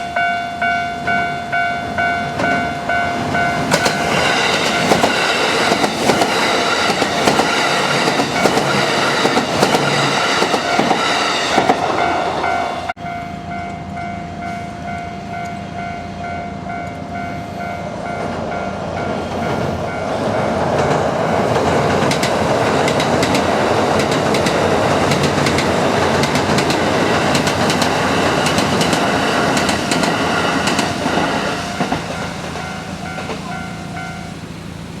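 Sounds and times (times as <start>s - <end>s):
crossing warning bell: 0.0s - 35.0s
electric train passing: 0.0s - 35.0s
wheels clicking over rail joints: 1.9s - 12.7s, 18.0s - 35.0s.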